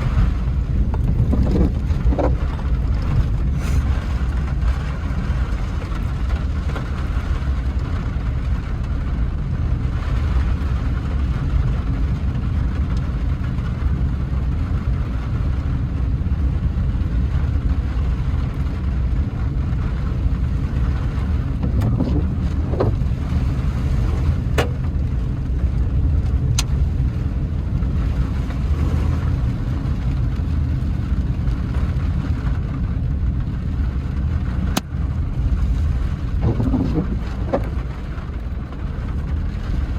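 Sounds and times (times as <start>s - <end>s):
heavy rain hissing: 0.0s - 9.0s
car engine and tyres rumbling: 0.0s - 39.9s.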